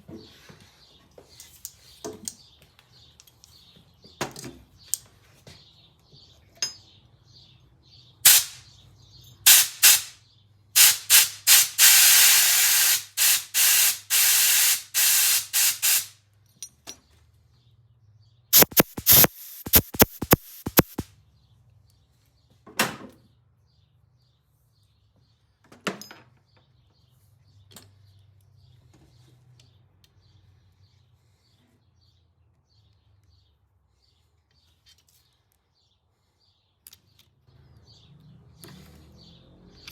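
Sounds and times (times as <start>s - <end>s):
aerosol spray hissing: 8.3s - 8.6s, 9.5s - 10.1s, 10.8s - 16.1s, 18.6s - 21.0s.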